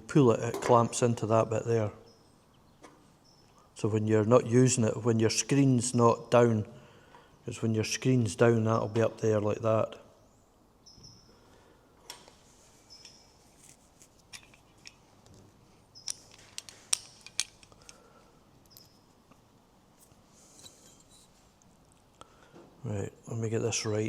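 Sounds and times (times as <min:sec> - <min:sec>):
metal hardware clicking: 0:13.0 - 0:15.0, 0:16.0 - 0:19.0.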